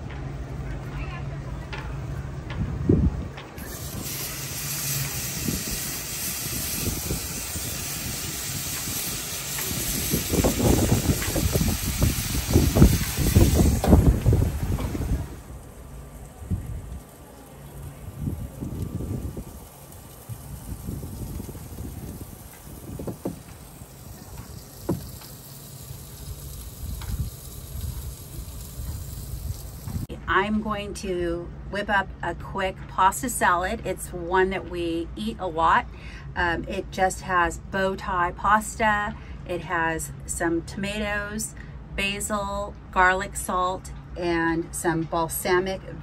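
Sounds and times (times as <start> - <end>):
steady hissing: 3.6 - 30.1.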